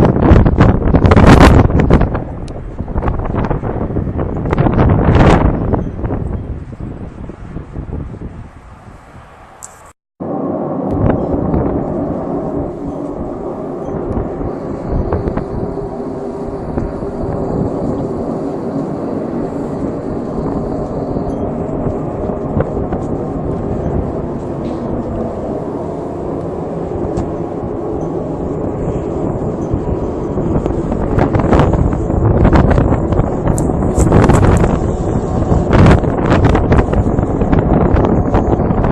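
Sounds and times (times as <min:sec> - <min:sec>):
low droning rumble from sky: 0:00.0 - 0:09.1, 0:10.2 - 0:38.9
thin high whine: 0:09.6 - 0:38.9.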